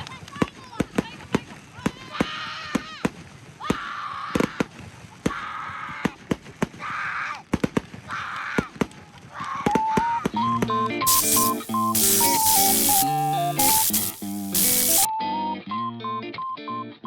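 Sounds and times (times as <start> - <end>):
rushing crackles of fireworks: 11.1 - 15.1.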